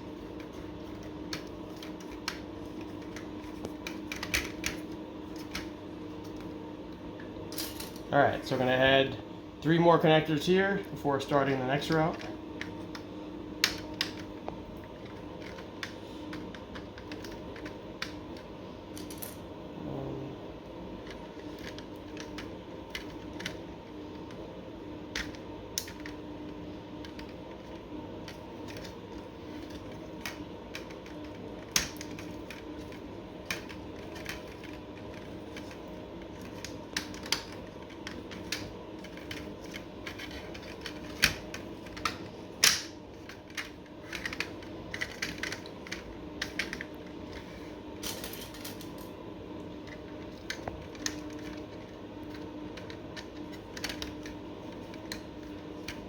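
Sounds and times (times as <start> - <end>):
faint steady hum: 0.0 - 56.0
plastic pieces clicking and tapping: 0.4 - 4.8, 29.5 - 35.8, 36.4 - 47.4, 52.3 - 56.0.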